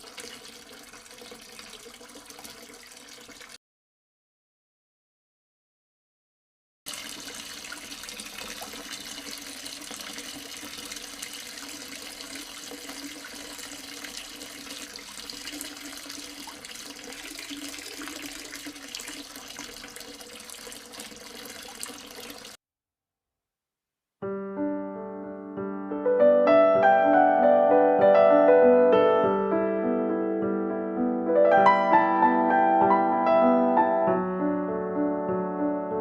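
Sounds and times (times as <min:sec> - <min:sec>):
fountain water trickling: 0:00.0 - 0:03.6, 0:06.9 - 0:22.6.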